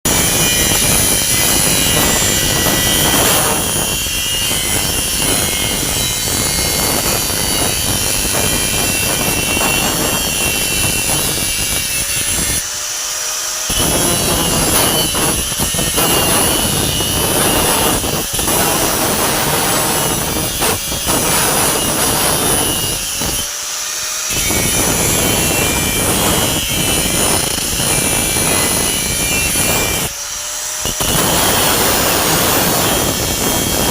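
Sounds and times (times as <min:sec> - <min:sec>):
electric arc welding crackle: 0:00.1 - 0:12.6, 0:13.7 - 0:23.5, 0:24.3 - 0:33.9.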